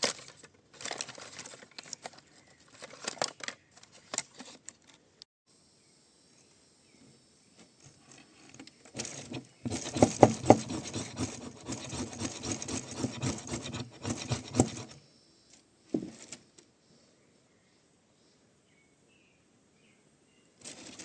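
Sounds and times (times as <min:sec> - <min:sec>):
twigs crackling and snapping: 0:00.0 - 0:05.0.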